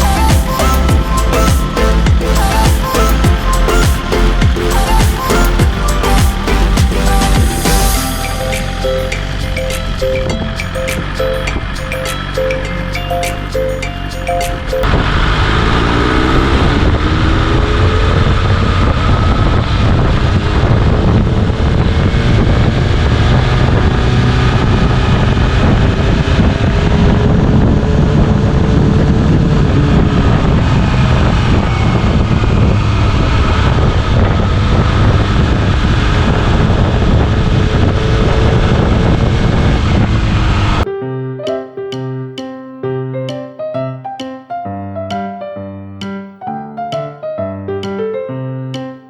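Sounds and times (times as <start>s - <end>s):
motorcycle engine revving: 14.8s - 40.8s
wind rush on microphone: 14.8s - 40.9s.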